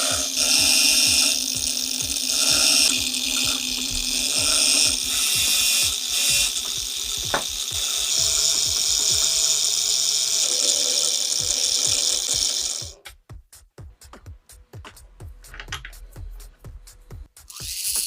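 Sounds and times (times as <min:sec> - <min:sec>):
small power tool whirring: 0:00.0 - 0:13.0, 0:17.4 - 0:18.0
background music with beat: 0:00.1 - 0:09.6, 0:11.3 - 0:18.0.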